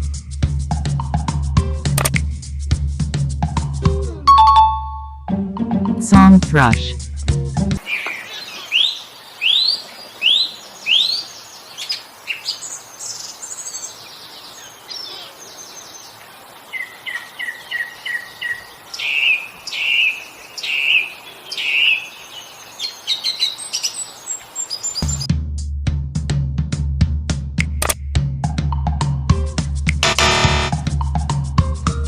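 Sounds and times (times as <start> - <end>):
song thrush singing: 7.8 - 25.3.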